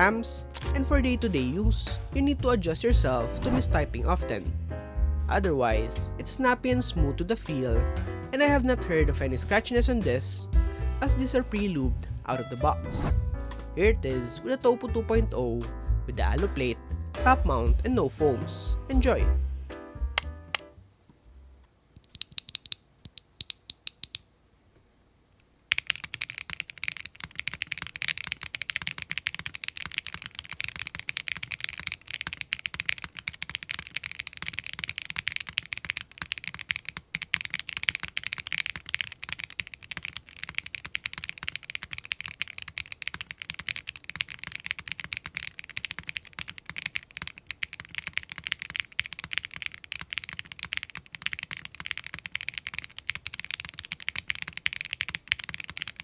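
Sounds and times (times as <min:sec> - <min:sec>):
mechanical keyboard typing: 0:25.7 - 0:56.0.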